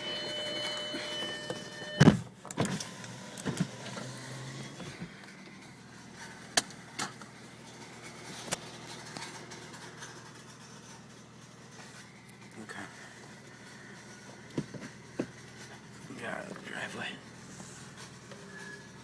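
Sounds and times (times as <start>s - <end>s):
car door shutting: 0.6s - 5.2s.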